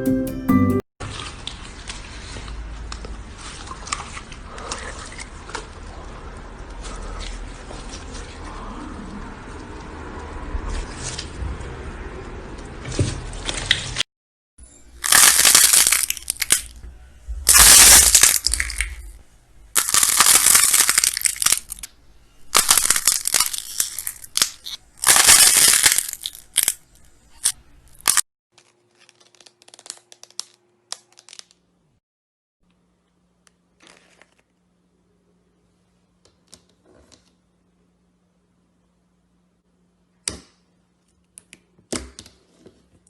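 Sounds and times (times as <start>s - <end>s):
slime crackling and crunching: 15.0s - 21.9s, 22.5s - 28.2s.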